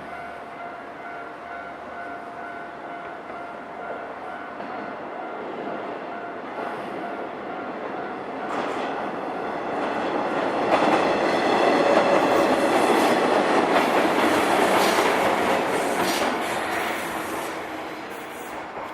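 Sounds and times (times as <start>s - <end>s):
train wheels clacking over rails: 7.8s - 18.9s.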